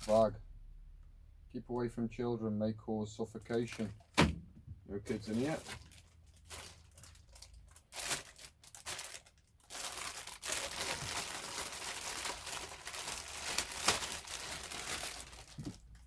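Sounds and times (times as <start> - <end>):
plastic bag crinkling: 5.1 - 16.0.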